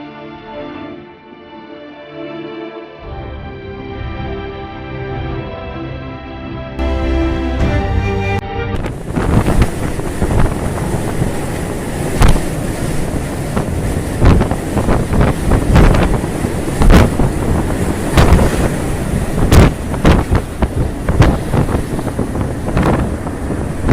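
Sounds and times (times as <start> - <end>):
wind buffeting microphone: 8.8 - 23.9.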